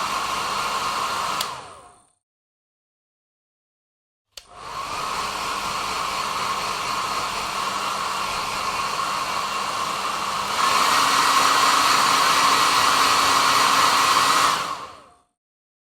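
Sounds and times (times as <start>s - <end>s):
hair dryer whirring: 0.0s - 2.1s, 4.4s - 15.2s
hair dryer switch click: 1.3s - 1.7s, 4.3s - 4.6s.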